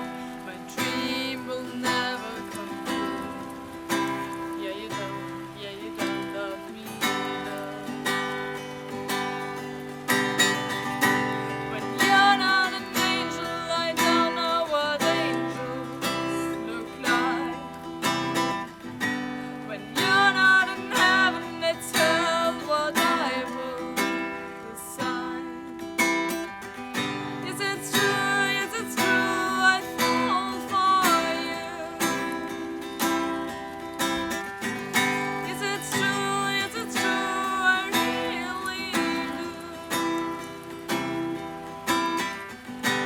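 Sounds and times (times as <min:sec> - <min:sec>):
person singing: 0:00.0 - 0:41.4
acoustic guitar strumming: 0:00.0 - 0:43.0.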